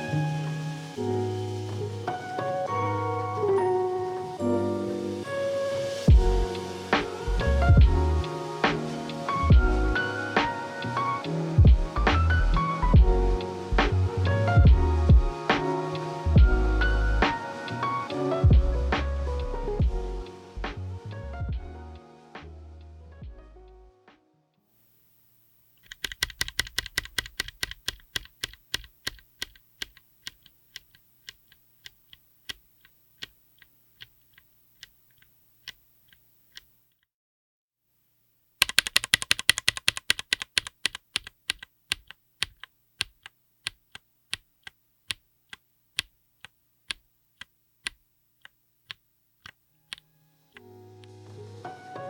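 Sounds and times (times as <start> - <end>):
mechanical keyboard typing: 25.8 - 32.6, 38.6 - 46.1.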